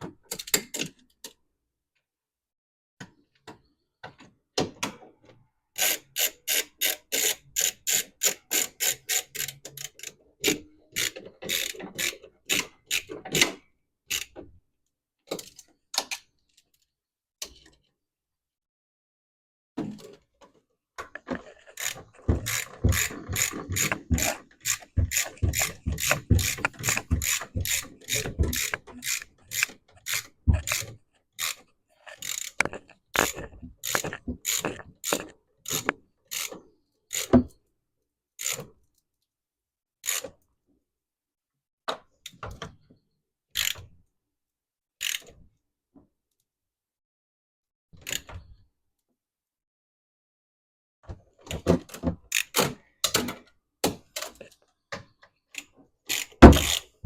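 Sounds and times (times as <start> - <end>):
socket ratchet clicking: 21.4 - 36.5, 56.1 - 56.9.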